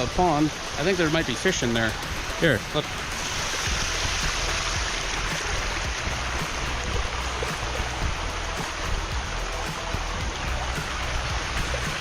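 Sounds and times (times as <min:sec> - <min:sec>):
running water rushing: 0:00.0 - 0:12.0.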